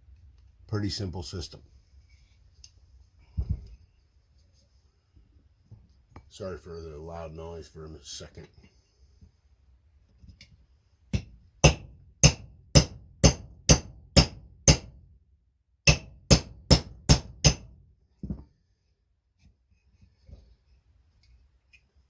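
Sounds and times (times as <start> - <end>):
hammer strikes on pin: 11.1 - 15.0, 15.8 - 17.8.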